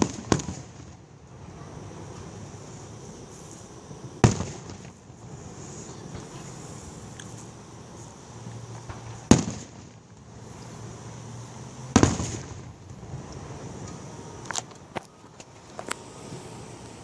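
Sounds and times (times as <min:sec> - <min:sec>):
small firework cracks: 0:00.0 - 0:01.5, 0:04.1 - 0:05.3, 0:08.5 - 0:10.7, 0:11.9 - 0:13.5
firework shell bursts: 0:00.0 - 0:07.6, 0:08.8 - 0:10.8, 0:11.8 - 0:13.3.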